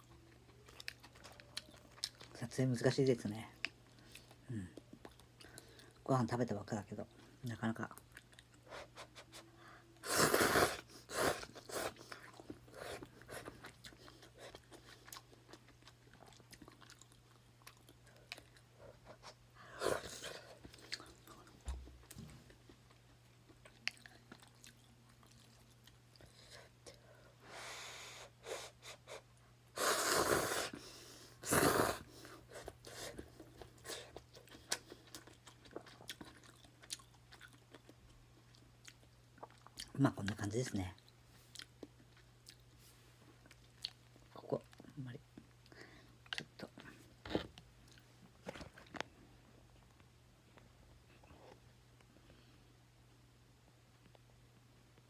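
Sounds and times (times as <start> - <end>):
person chewing: 0.0 - 2.4, 10.0 - 26.4, 31.4 - 40.0, 41.5 - 42.8, 43.4 - 44.8
person slurping noodles: 10.0 - 12.0, 29.8 - 30.7, 31.4 - 32.1.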